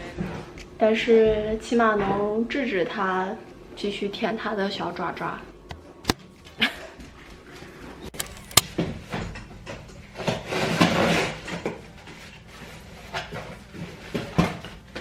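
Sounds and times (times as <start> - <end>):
sharp clicks and knocks: 8.1 - 8.8.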